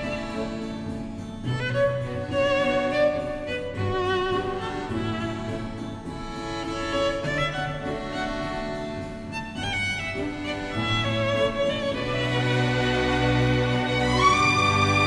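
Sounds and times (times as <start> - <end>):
sustained low strings: 0.0 - 15.0
violin melody with vibrato: 0.0 - 15.0.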